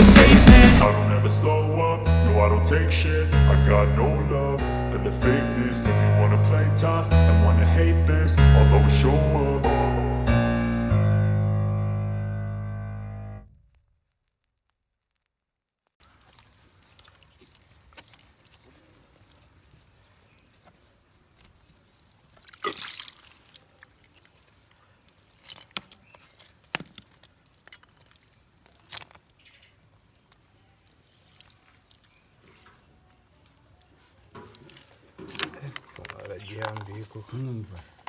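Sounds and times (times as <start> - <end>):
faint background noise: 16.0 - 38.0.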